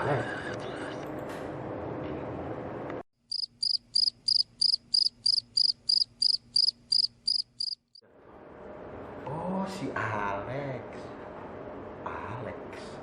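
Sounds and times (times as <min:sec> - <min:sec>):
cricket chirping: 0:03.3 - 0:08.0.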